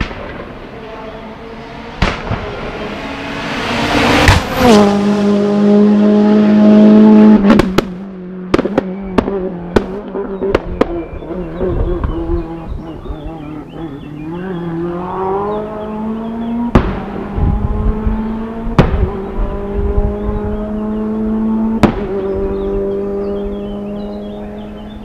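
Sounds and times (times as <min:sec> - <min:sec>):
rally car engine accelerating: 0:00.3 - 0:25.0.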